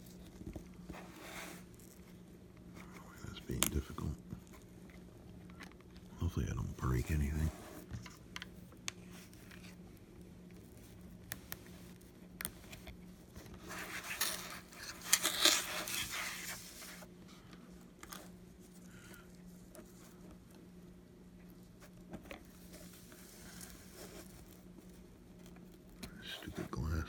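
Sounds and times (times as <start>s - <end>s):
scraping and crackling: 12.4s - 17.0s.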